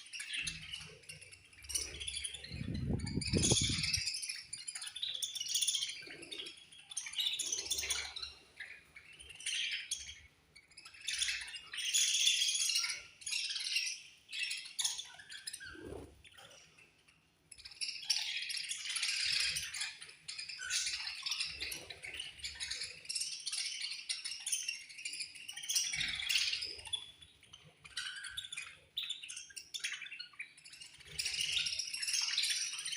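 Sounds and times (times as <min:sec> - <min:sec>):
budgerigars chirping: 0:00.1 - 0:16.8.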